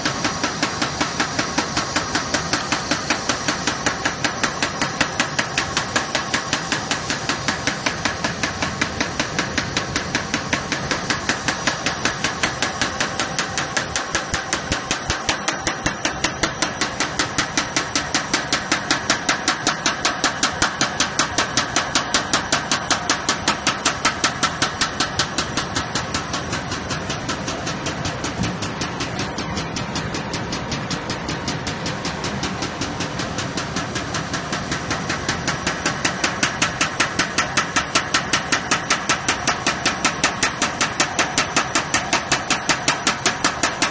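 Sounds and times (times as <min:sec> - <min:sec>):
machine hum: 0:00.0 - 0:42.2
cutting knife knocking rhythmically: 0:01.1 - 0:43.9.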